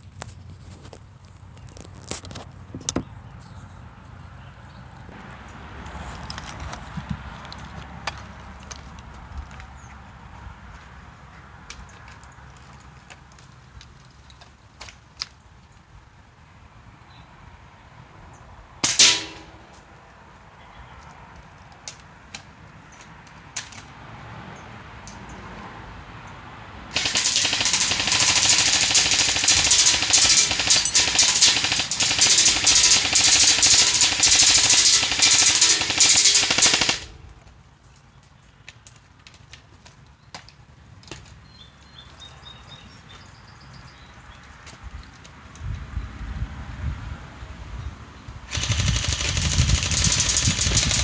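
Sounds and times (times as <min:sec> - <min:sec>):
air gun shot: 0:18.8 - 0:19.8, 0:26.9 - 0:37.2, 0:48.5 - 0:51.0
sharp clicks: 0:26.9 - 0:37.2, 0:48.5 - 0:51.0.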